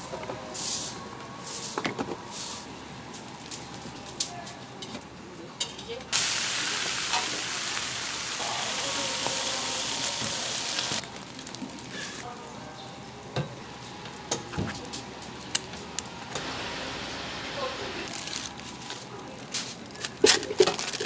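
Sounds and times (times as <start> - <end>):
food sizzling: 6.2 - 11.5.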